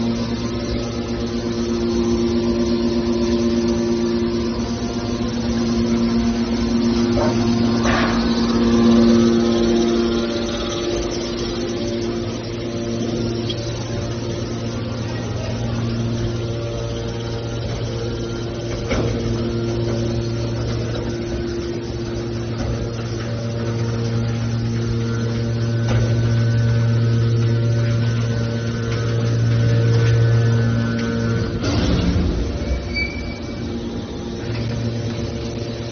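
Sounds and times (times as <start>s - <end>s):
baler press machine hum: 0.0s - 35.9s.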